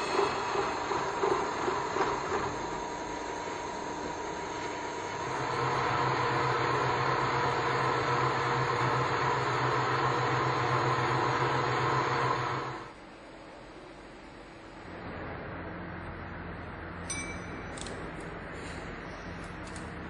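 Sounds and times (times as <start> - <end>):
milling machine drone: 0.0 - 12.9.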